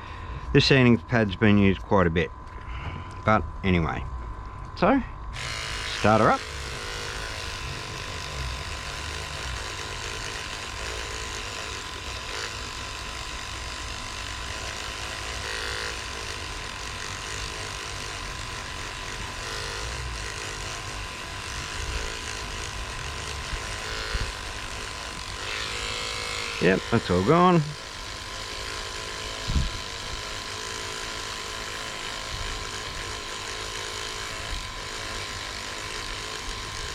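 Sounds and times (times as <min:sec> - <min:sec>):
electric toothbrush buzzing: 0:04.8 - 0:36.9.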